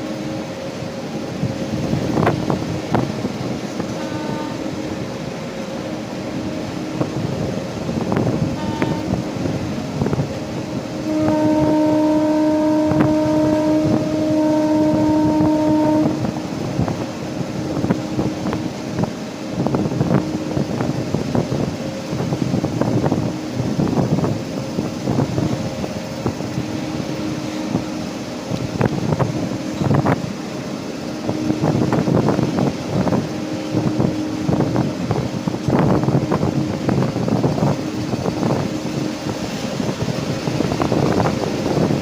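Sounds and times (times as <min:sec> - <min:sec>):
train rumbling and clatter: 0:00.0 - 0:42.0
locomotive horn blast: 0:03.8 - 0:07.0, 0:08.4 - 0:09.8, 0:10.4 - 0:18.9, 0:26.2 - 0:42.0.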